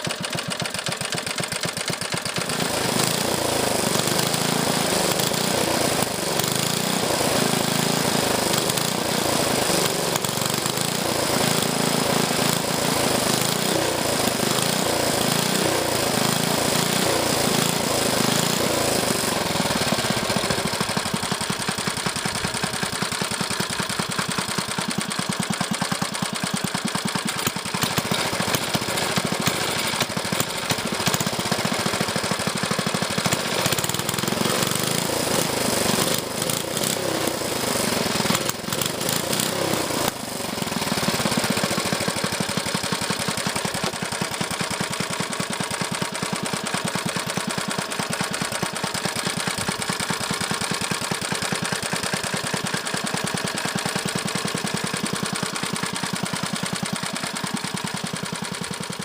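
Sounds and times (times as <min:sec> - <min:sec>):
small engine running: 0:00.0 - 0:59.0.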